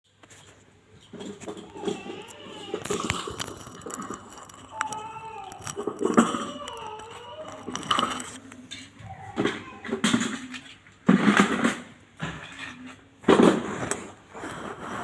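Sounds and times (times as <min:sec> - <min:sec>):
metallic clatter and clinks: 0:01.4 - 0:08.8.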